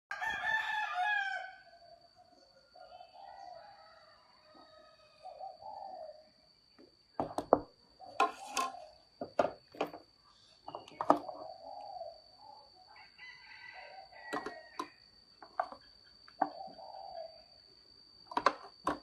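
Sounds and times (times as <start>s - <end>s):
rooster crowing: 0.1s - 2.1s, 2.8s - 5.7s, 12.8s - 15.1s
sharp knocks and clatters: 7.2s - 11.4s.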